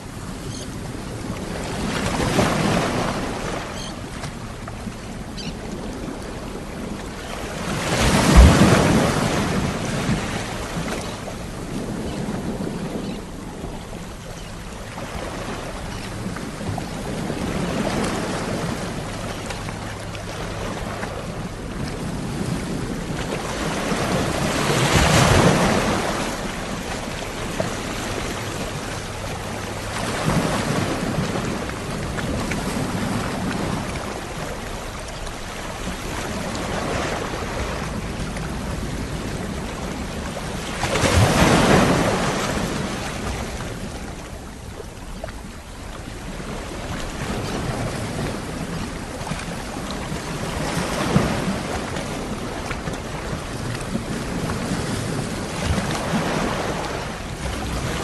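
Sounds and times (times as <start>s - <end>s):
sea waves breaking on shore: 0.0s - 58.0s.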